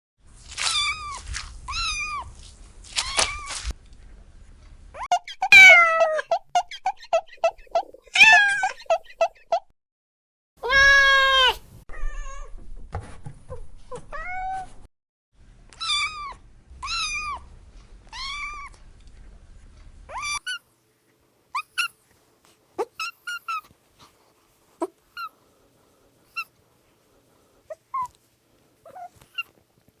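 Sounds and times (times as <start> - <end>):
cats meowing: 5.0 - 9.3, 10.6 - 12.4, 21.6 - 22.0, 22.8 - 23.7, 27.7 - 28.2, 28.8 - 29.6.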